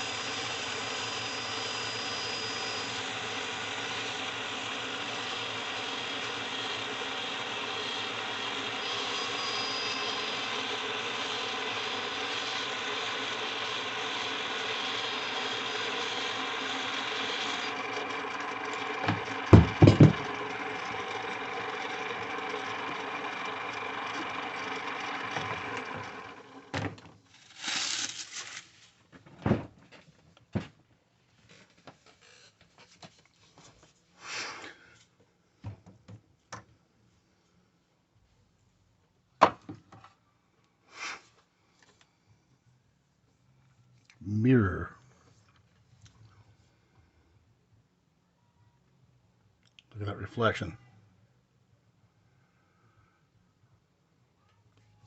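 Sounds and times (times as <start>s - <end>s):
lathe running: 0.0s - 26.8s.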